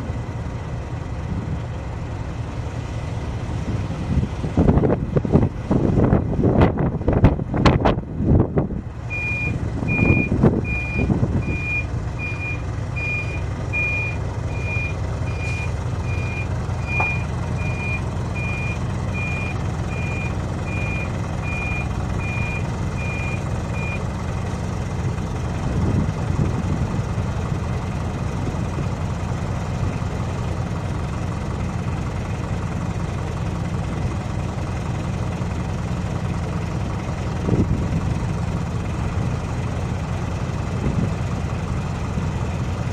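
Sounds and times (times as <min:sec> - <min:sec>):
heavy engine running: 0:00.0 - 0:42.9
reversing alarm beeping: 0:09.1 - 0:24.0.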